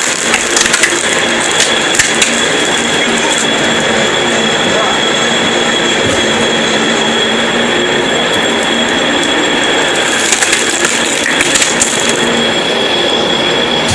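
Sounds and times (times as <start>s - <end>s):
lathe whining: 0.0s - 13.9s.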